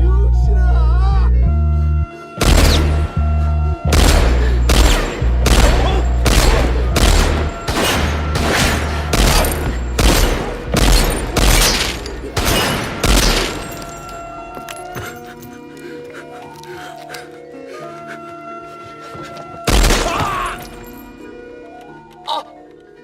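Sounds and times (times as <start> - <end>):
loud echoing gunshots: 2.4 - 3.3, 3.9 - 14.2, 19.7 - 20.8.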